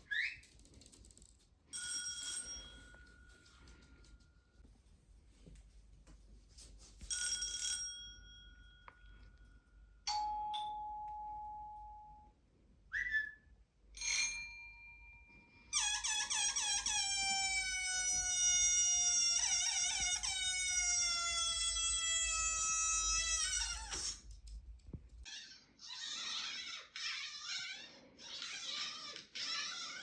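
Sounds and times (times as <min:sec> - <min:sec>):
bell-like dings: 0:10.1 - 0:12.3, 0:14.0 - 0:15.7.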